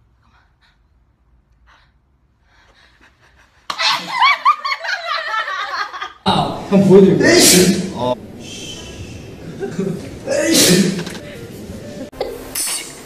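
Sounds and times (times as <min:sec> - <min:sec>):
person sneezing: 0:10.3 - 0:11.2.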